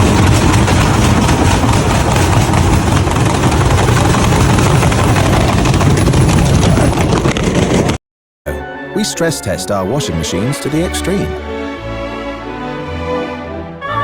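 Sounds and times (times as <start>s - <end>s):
loud mechanical rumble: 0.0s - 8.0s.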